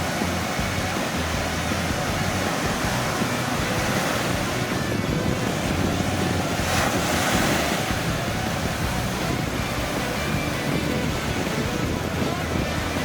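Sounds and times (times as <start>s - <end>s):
surf washing onto beach: 0.0s - 13.0s
wind buffeting microphone: 0.0s - 13.0s.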